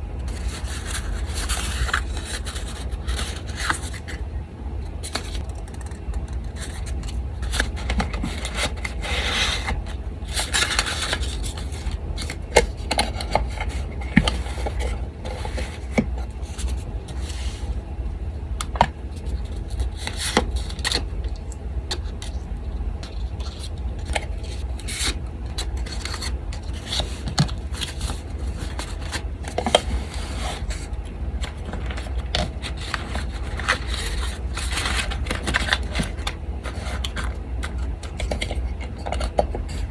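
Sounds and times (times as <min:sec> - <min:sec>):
electric fan humming: 0:00.0 - 0:39.9
paper rubbing and scraping: 0:00.2 - 0:04.2, 0:05.0 - 0:17.8, 0:23.0 - 0:39.9.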